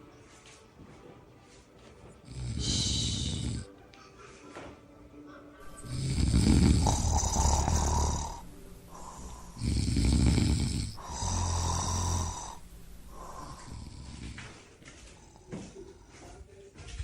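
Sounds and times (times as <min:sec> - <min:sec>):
person snoring: 0:02.2 - 0:03.7, 0:05.6 - 0:14.6.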